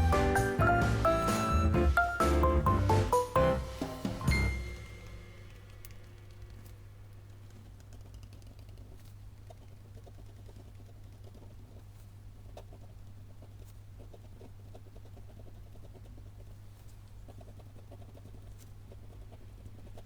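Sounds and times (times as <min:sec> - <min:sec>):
low steady hum: 0:00.0 - 0:20.0
rapid taps of paper handling: 0:05.5 - 0:20.0.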